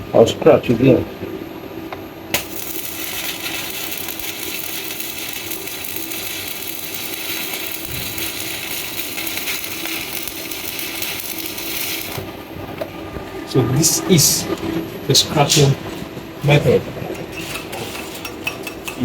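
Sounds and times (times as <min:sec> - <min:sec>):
welding rod scratching metal: 0:02.3 - 0:12.3, 0:17.2 - 0:19.0
welding arc crackling hiss: 0:02.3 - 0:12.4.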